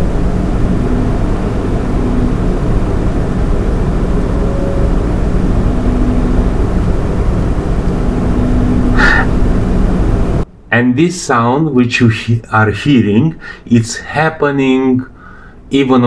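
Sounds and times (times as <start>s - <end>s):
computer fans whirring: 0.0s - 16.0s
faint resonant fan tones: 0.0s - 16.0s.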